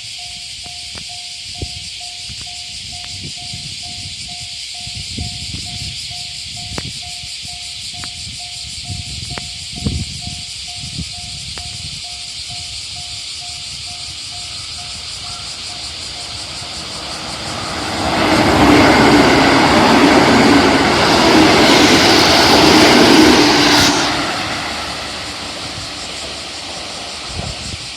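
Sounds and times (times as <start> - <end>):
level crossing warning bell: 0.0 - 17.8
electric train rumble and wheel noise: 0.0 - 27.9
high hiss: 0.0 - 27.9.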